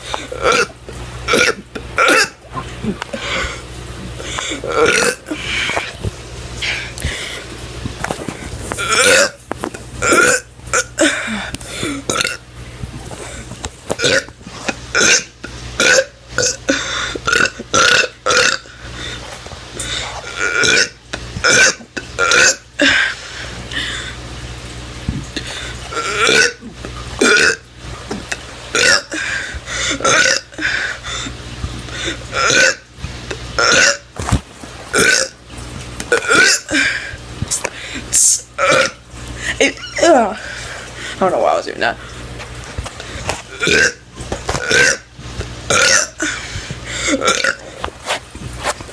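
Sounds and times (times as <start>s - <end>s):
person burping loudly: 0.1s - 3.6s, 4.2s - 6.0s, 8.8s - 9.4s, 10.0s - 12.4s, 13.2s - 18.8s, 19.8s - 23.2s, 25.4s - 27.7s, 28.3s - 31.3s, 31.9s - 32.9s, 33.6s - 34.1s, 34.9s - 35.4s, 36.1s - 37.1s, 38.1s - 40.4s, 43.5s - 47.7s.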